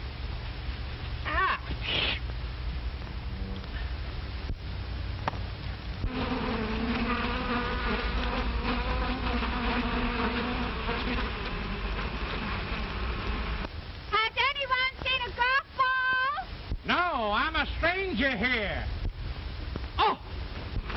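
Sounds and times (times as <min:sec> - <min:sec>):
low hum and hiss: 0:00.0 - 0:20.9
bee buzzing: 0:06.0 - 0:13.7.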